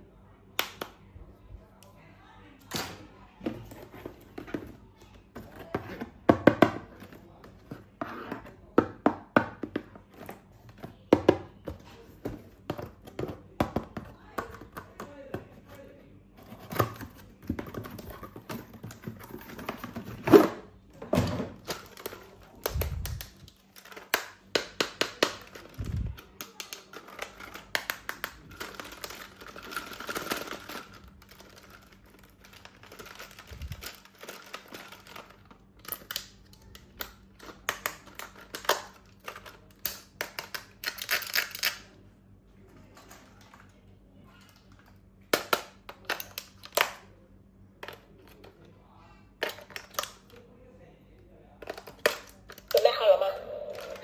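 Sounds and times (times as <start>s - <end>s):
plastic toys clicking and tapping: 21.6s - 41.9s, 44.4s - 47.1s, 49.4s - 50.4s, 51.6s - 54.0s.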